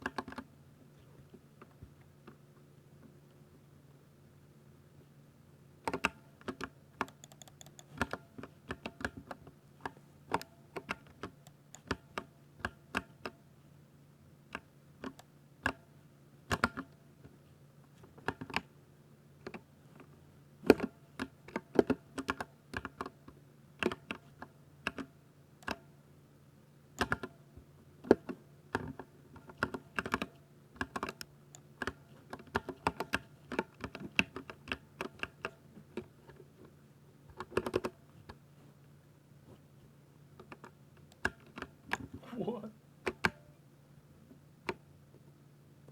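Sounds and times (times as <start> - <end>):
mechanical keyboard typing: 5.9 - 9.2, 11.2 - 12.3.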